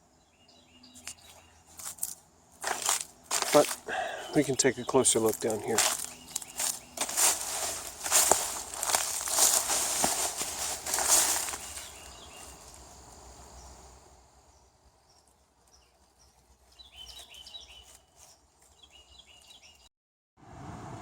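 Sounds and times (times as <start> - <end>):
bird chirping: 0.0 - 1.8, 3.3 - 13.9, 14.5 - 19.9
footsteps crunching: 0.9 - 13.3.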